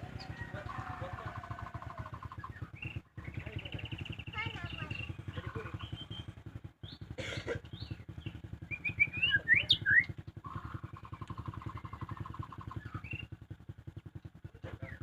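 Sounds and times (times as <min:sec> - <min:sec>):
bird rattle call: 0:00.0 - 0:06.3, 0:08.7 - 0:13.4
small engine idling: 0:00.0 - 0:15.0
bird whistling song: 0:01.6 - 0:07.1, 0:07.7 - 0:13.4.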